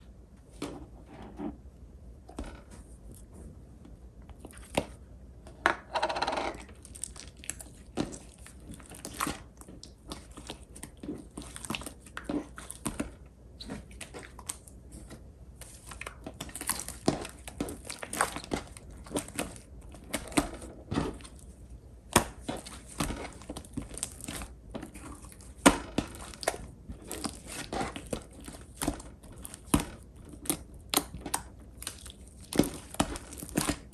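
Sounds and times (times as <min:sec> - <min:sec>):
slime squishing and popping: 0:15.6 - 0:33.9.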